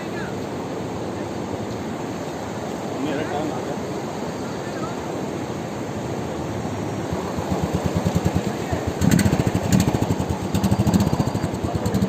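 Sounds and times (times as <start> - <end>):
river water rushing: 0.0 - 12.0
motorcycle engine revving: 7.0 - 12.0.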